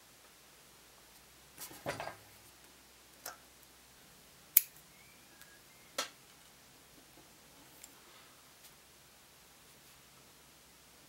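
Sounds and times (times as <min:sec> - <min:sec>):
sharp tool clicks: 0:04.6 - 0:04.8.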